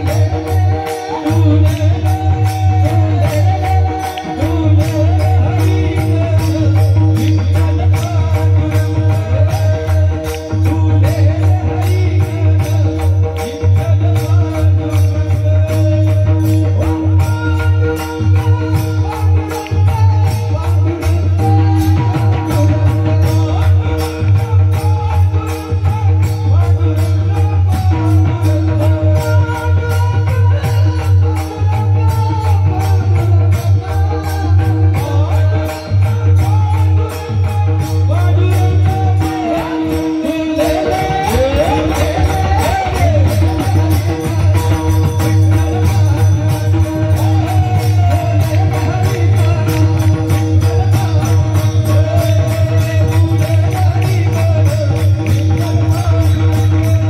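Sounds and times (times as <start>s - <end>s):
loud music with tambourine beat: 0.0s - 57.0s.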